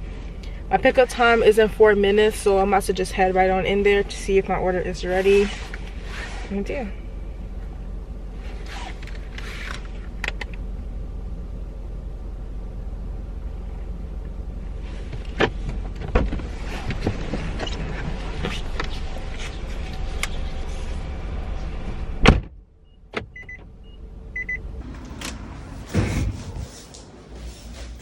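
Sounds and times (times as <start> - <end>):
low hum: 0.0 - 28.0
clicks and knocks inside car: 15.1 - 19.0
car door shutting: 22.2 - 23.7, 24.8 - 26.9.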